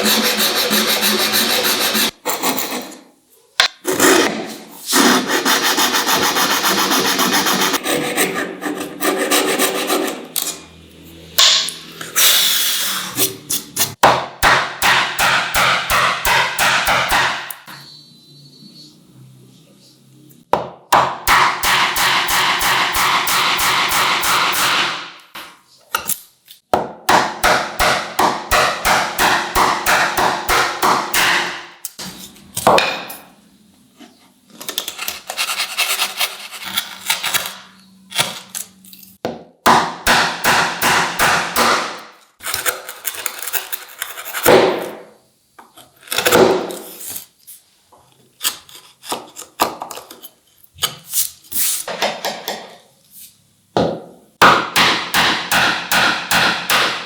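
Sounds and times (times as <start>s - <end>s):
hand tools scraping wood: 0.0s - 3.0s, 3.9s - 10.6s, 34.8s - 37.5s.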